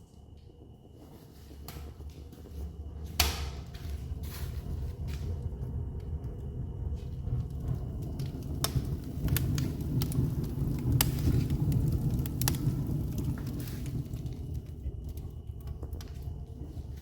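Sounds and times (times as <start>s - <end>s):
fire crackling in a fireplace: 0.0s - 17.0s.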